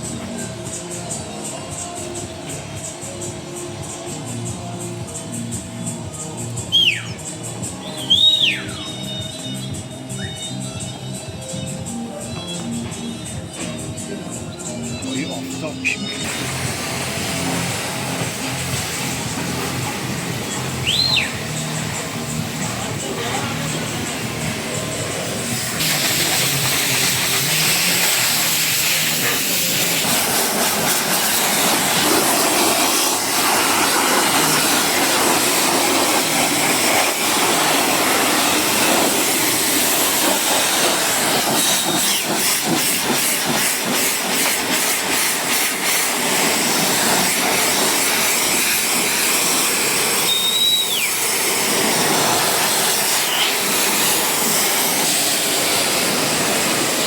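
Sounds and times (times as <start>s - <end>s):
pressure washer spraying: 0.0s - 57.0s
high squeal: 5.3s - 16.6s, 20.5s - 26.4s, 28.4s - 42.4s, 49.9s - 51.6s, 52.6s - 55.5s.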